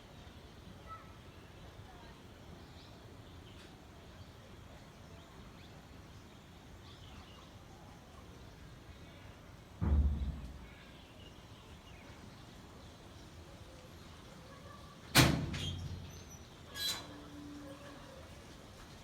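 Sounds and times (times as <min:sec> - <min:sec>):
faint outdoor ambience: 0:00.0 - 0:19.0
loud thump with low boom: 0:09.8 - 0:10.7.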